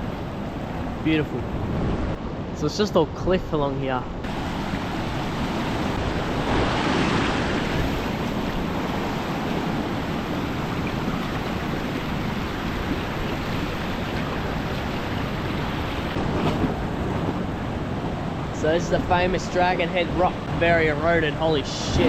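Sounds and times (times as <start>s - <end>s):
wind on microphone: 0.0s - 2.6s, 4.0s - 19.3s
ocean surf washing: 0.0s - 22.0s.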